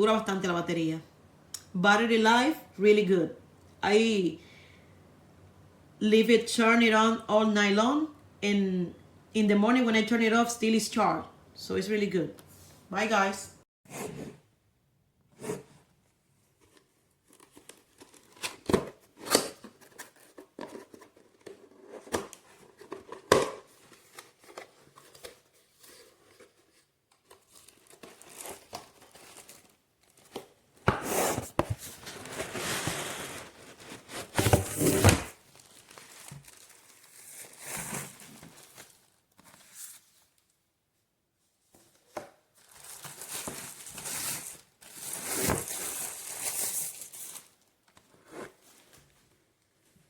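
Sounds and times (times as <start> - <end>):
rustling and crinkling: 15.5 - 40.6, 41.5 - 50.0.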